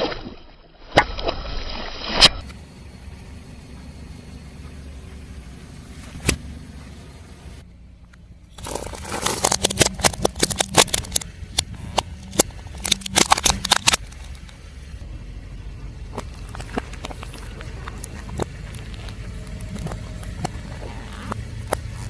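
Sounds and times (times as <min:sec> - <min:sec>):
objects crackling and snapping: 0:08.6 - 0:14.6.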